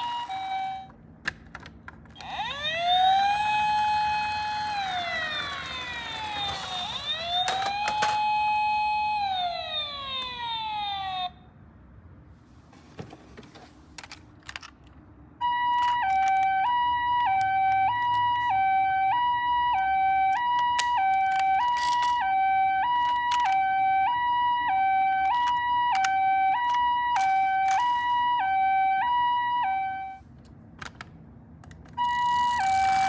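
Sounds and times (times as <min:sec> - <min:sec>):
toy siren wailing: 0:00.0 - 0:00.9, 0:02.2 - 0:11.4, 0:15.4 - 0:30.2, 0:32.0 - 0:33.0
two-tone hi-lo siren: 0:00.0 - 0:00.9, 0:02.2 - 0:11.4, 0:15.4 - 0:30.2, 0:32.0 - 0:33.0.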